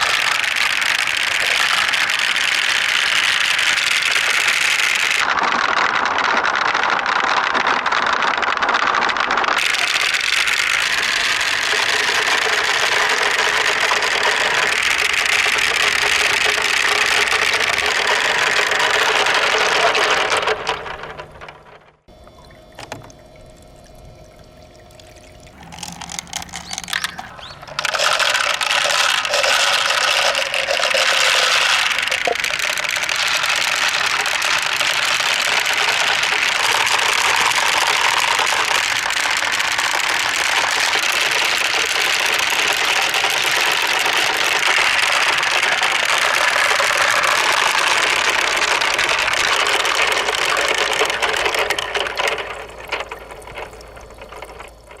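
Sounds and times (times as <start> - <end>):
marbles rattling down a slide: 25.6 - 38.7.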